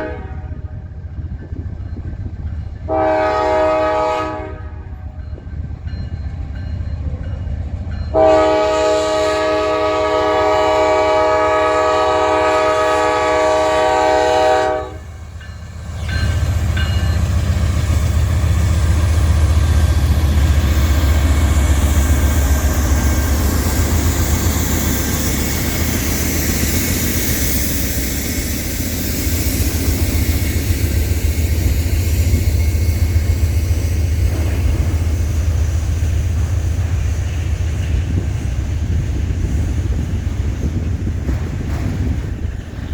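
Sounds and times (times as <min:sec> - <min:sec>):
locomotive air horn blast: 0:00.0 - 0:00.8, 0:02.9 - 0:05.1, 0:08.1 - 0:15.2
locomotive engine rumble: 0:00.3 - 0:42.9
wheels clattering on rails: 0:36.4 - 0:42.9.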